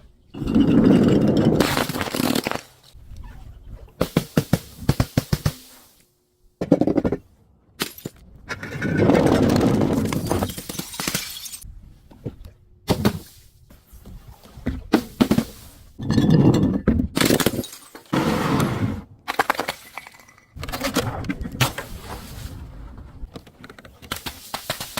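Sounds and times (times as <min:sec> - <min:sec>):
glass crunching: 0:10.1 - 0:11.6.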